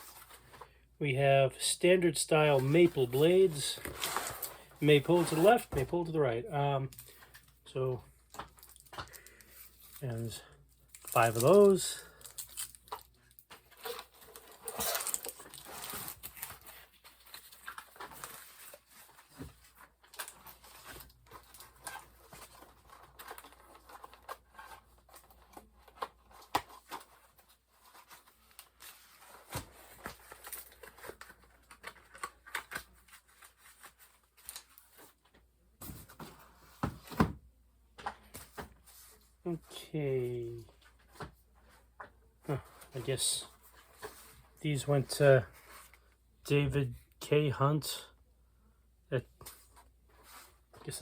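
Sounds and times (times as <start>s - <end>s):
paper or plastic rustling: 10.9s - 35.2s.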